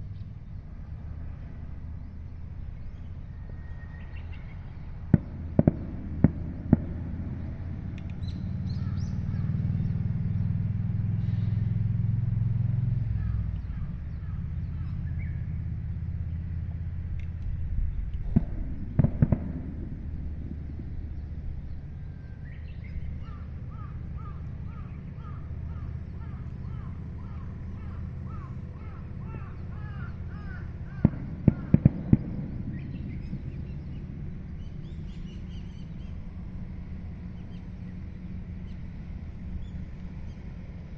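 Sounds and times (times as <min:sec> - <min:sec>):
birds chirping: 0:00.0 - 0:11.7, 0:13.0 - 0:16.7, 0:17.8 - 0:40.9
steady low rumble: 0:00.0 - 0:40.9
sharp bangs: 0:05.1 - 0:07.7, 0:18.2 - 0:21.2, 0:30.9 - 0:33.7.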